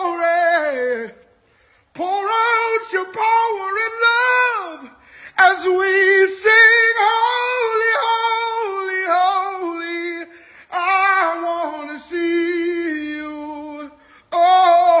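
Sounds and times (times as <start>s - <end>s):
breaths: 1.3s - 2.0s, 4.9s - 5.4s, 10.3s - 10.8s, 14.0s - 14.3s
high solo voice singing: 2.0s - 15.0s.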